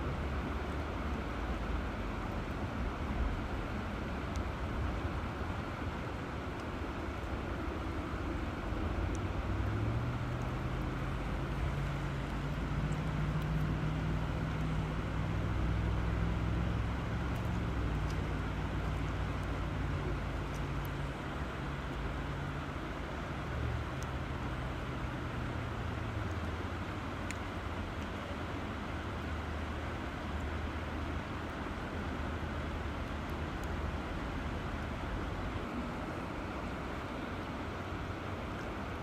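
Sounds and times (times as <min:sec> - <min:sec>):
flowing river water: 0:00.0 - 0:39.0.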